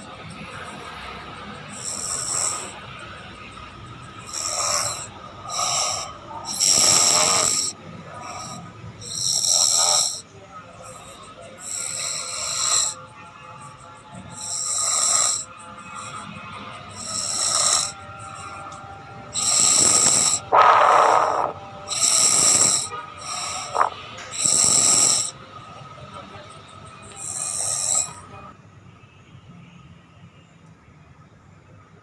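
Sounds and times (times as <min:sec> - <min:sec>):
cat snoring: 0:00.0 - 0:25.4, 0:27.0 - 0:28.3
cat snorting: 0:01.6 - 0:03.5, 0:04.2 - 0:13.0, 0:14.3 - 0:18.7, 0:19.4 - 0:25.4, 0:27.1 - 0:28.2.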